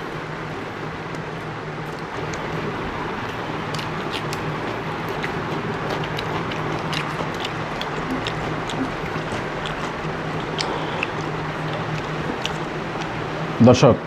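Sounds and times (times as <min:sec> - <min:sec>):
eating clicks and smacks: 0:01.1 - 0:13.3.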